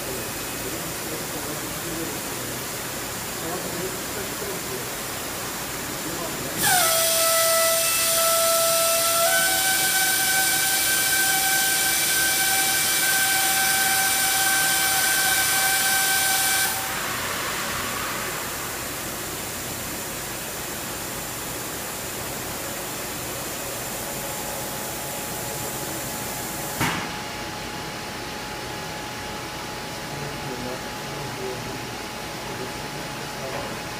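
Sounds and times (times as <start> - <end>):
machine hiss: 5.9 - 22.0
machine high whine: 6.5 - 19.8.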